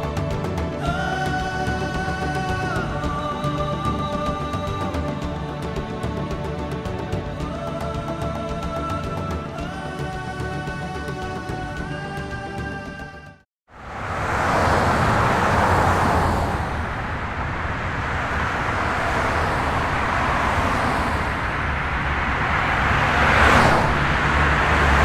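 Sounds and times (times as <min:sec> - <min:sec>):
road traffic rumble: 0:13.7 - 0:25.0.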